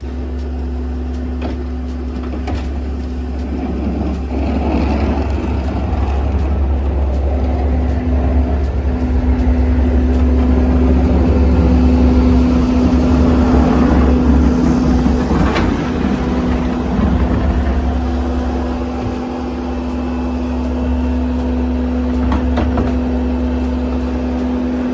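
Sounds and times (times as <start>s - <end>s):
engine running steadily: 0.0s - 24.9s.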